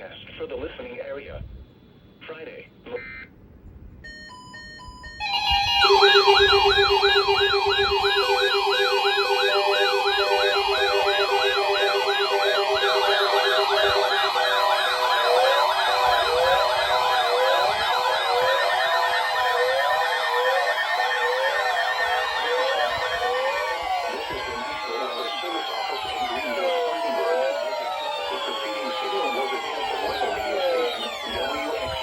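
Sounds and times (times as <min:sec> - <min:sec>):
electronic siren wails sweeping: 0:04.1 - 0:32.0.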